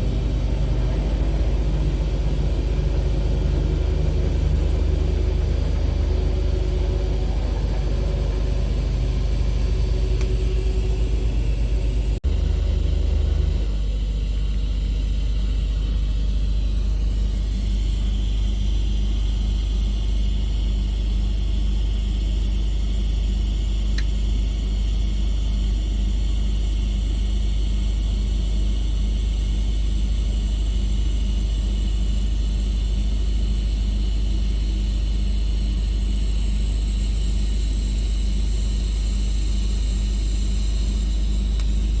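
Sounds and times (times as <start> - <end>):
welding hum with hiss: 0.0 - 42.0.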